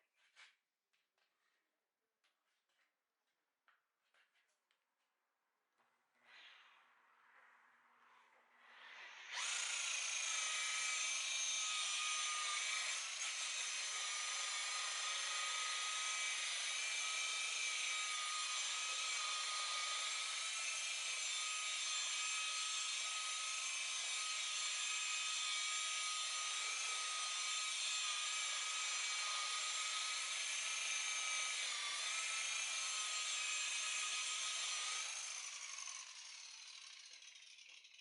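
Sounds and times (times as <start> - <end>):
electric polisher whining: 9.2 - 35.8.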